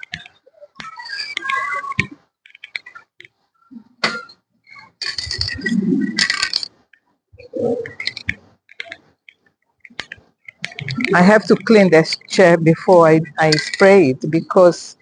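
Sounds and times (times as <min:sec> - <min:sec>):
garden chair clinking and scraping: 0:10.4 - 0:14.6.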